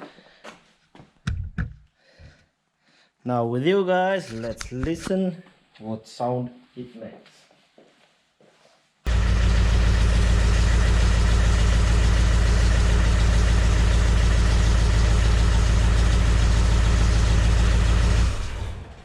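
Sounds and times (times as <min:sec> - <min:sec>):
diesel engine idling: 0:09.1 - 0:19.0.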